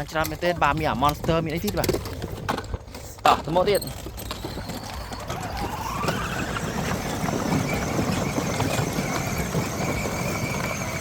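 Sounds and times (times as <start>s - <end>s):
motor whining: 4.9s - 11.0s.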